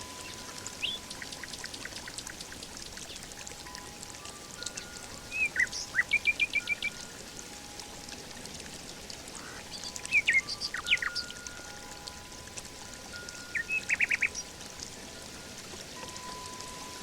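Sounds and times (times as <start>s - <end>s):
birds chirping: 0.0s - 2.3s, 4.7s - 7.0s, 9.4s - 11.4s, 13.4s - 14.5s
water trickling: 0.0s - 17.0s.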